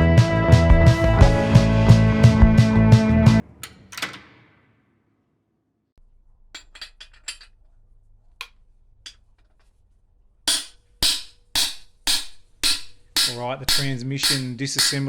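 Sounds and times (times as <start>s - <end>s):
metal tools clinking: 6.5s - 9.8s
loud ringing metal strikes: 10.5s - 15.0s.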